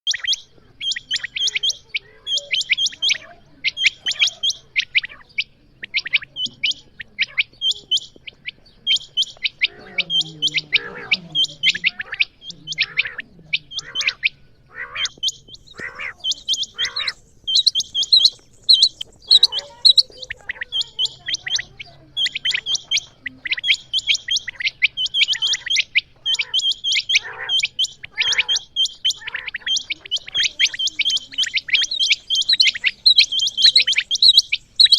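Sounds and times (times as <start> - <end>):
quail chirping: 0.0 - 34.9.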